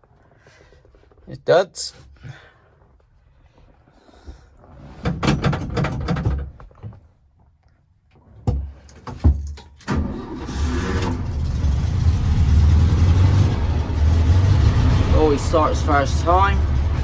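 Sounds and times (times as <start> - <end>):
car engine starting and idling: 9.8 - 17.0.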